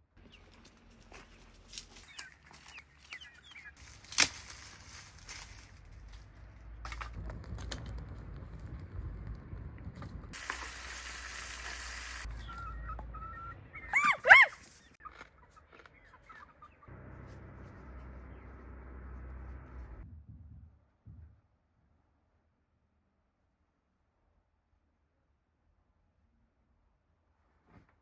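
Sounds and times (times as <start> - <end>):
hiss: 10.4 - 12.3
chicken calling: 11.3 - 17.4.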